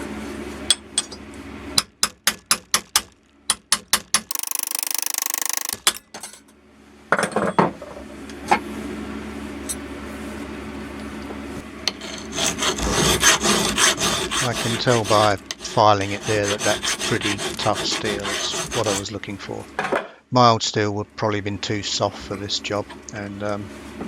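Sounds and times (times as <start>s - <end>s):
harsh buzzing: 4.3s - 6.0s
file rasping on steel: 11.9s - 19.2s.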